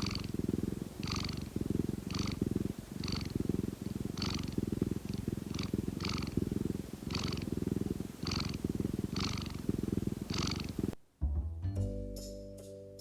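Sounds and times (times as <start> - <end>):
cat purring: 0.0 - 11.0.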